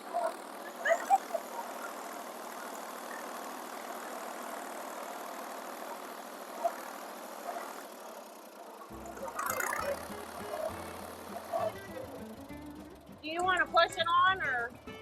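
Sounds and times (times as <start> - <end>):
tractor engine running: 0.0 - 15.0
music: 8.9 - 15.0.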